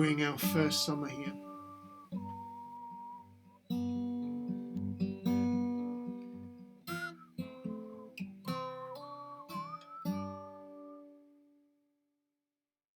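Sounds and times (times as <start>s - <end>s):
acoustic guitar strumming chords: 0.0s - 11.2s.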